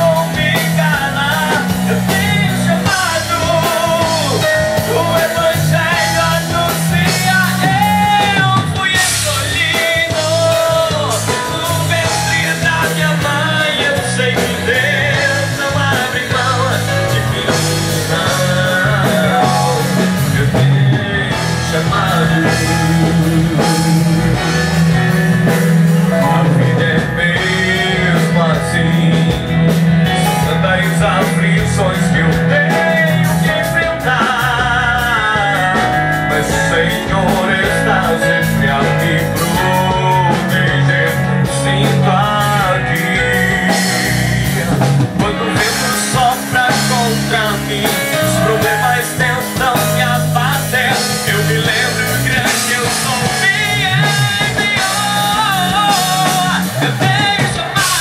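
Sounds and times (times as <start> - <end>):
lead vocalist singing: 0.0 - 58.0
rock band playing: 0.0 - 58.0.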